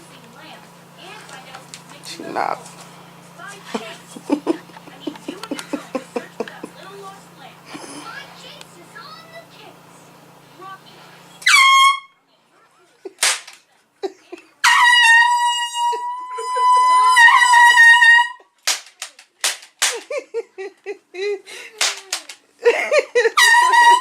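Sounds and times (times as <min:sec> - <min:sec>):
air horn blasting: 0:11.4 - 0:12.2, 0:14.6 - 0:18.4, 0:23.4 - 0:24.0.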